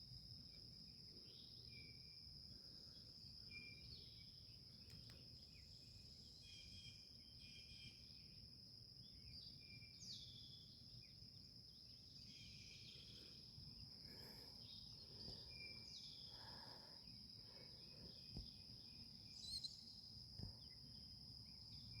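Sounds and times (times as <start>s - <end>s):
bird chirps: 18.1s - 20.8s.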